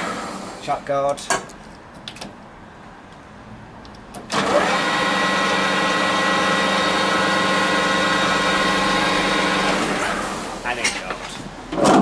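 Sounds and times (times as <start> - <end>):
lathe running with whine: 4.4 - 10.6.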